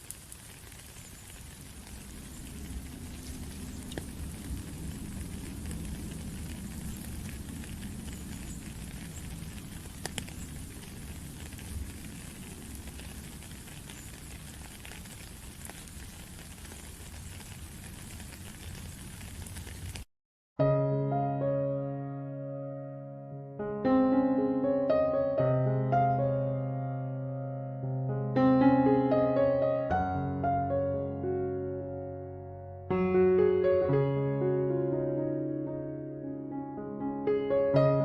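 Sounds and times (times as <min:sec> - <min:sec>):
water patter and hiss: 0:00.0 - 0:20.1
low rumble: 0:01.8 - 0:12.9.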